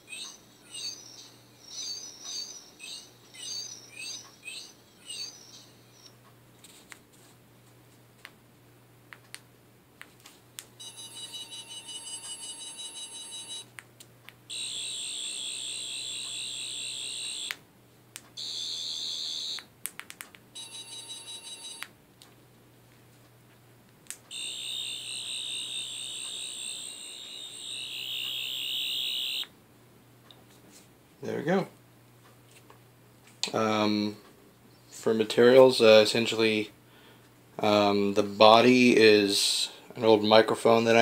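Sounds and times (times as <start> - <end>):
electronic warbling buzz: 24.3 - 29.5.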